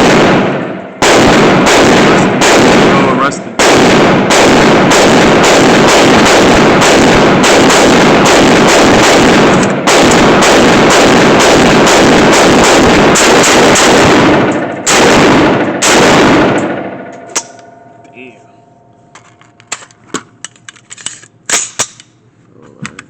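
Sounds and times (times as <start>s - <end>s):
rapid gunshots: 0.0s - 17.1s.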